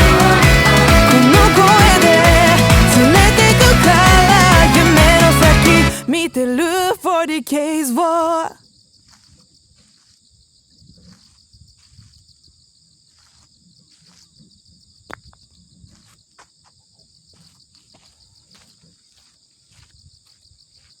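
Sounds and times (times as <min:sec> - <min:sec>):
insects trilling: 0:06.1 - 0:21.0.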